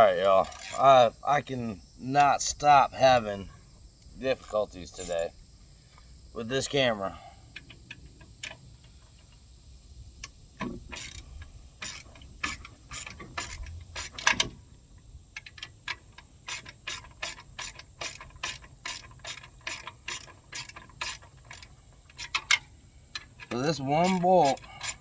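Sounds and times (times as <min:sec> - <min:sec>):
ratchet wrench clicking: 0:00.2 - 0:00.9, 0:10.2 - 0:14.6, 0:15.4 - 0:25.0.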